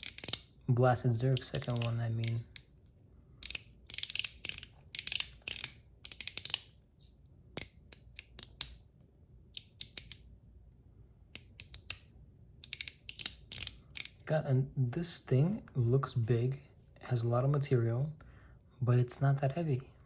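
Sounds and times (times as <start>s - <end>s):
fidget slider clicking: 0.0s - 0.5s, 1.4s - 2.7s, 3.4s - 6.7s, 11.4s - 14.2s.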